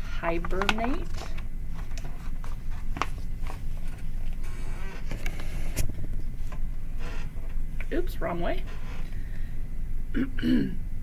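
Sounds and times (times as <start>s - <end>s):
steady low hum: 0.0s - 11.0s
picture book pages handled: 0.4s - 7.5s.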